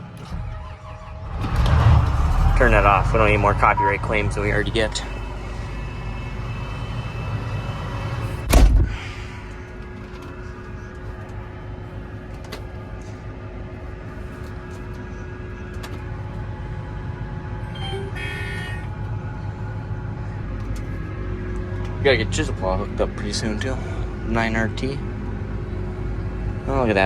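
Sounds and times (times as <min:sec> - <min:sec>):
steady low hum: 0:00.0 - 0:27.0
short high-pitched tone: 0:17.6 - 0:18.9.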